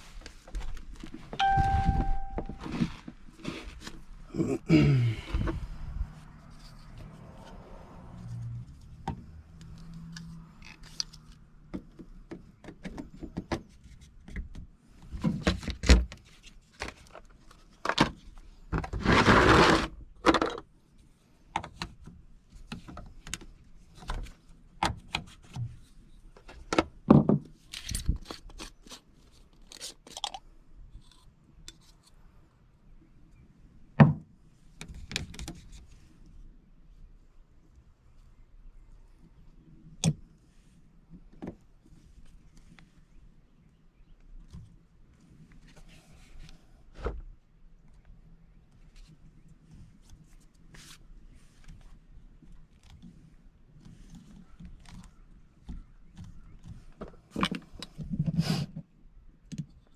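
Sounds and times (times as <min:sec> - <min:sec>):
tools and plastic fittings clicking: 0:27.7 - 0:32.2.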